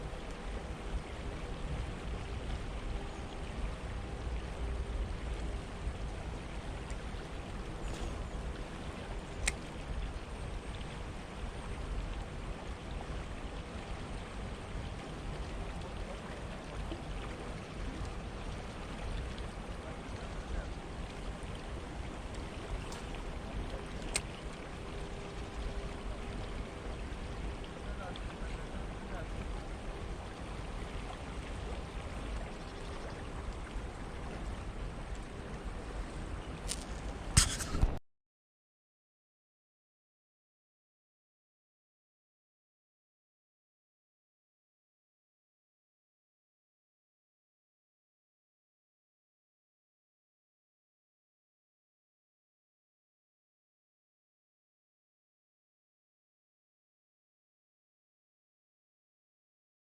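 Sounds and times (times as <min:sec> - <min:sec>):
flowing water rushing: 0:00.0 - 0:38.0
sharp click: 0:36.7 - 0:38.0.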